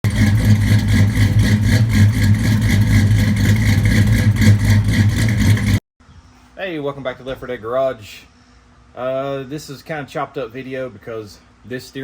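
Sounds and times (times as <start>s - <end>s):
vehicle engine throbbing: 0.0s - 5.8s.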